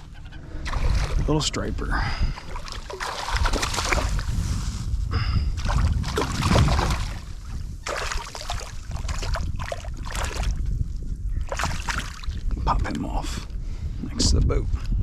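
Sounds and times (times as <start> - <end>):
wind rumble on microphone: 0.0 - 15.0
water splashing against kayak: 2.3 - 4.8, 5.5 - 10.6.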